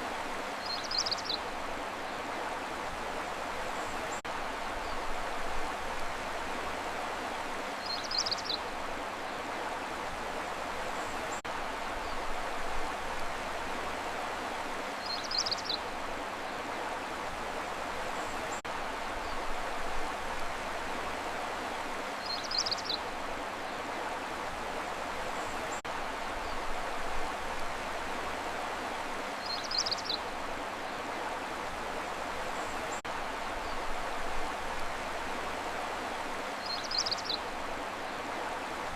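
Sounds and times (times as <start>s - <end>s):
running water stream: 0.0s - 38.9s.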